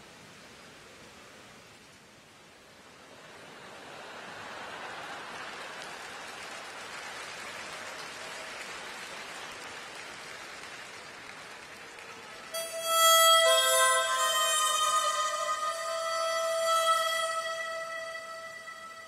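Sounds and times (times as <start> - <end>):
crowd applauding: 4.2 - 19.0.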